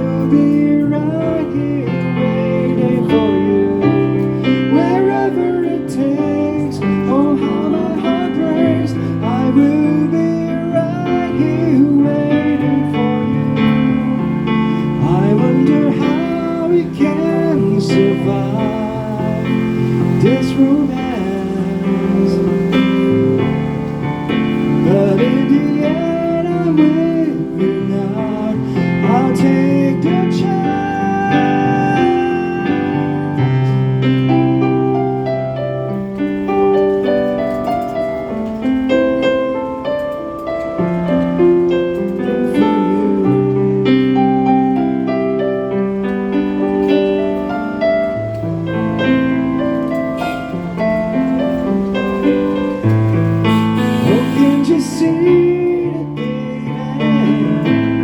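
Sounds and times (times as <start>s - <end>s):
person singing: 0.0s - 23.6s, 24.5s - 34.5s, 40.8s - 45.0s, 52.3s - 58.0s
electric keyboard ballad chords: 0.0s - 58.0s.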